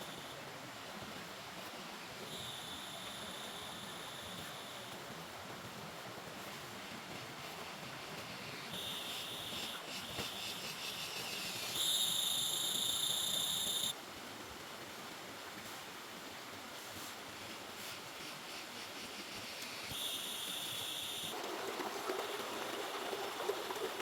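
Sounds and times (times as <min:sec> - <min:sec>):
flowing river water: 0:00.0 - 0:24.0
high whistling tone: 0:11.6 - 0:13.9.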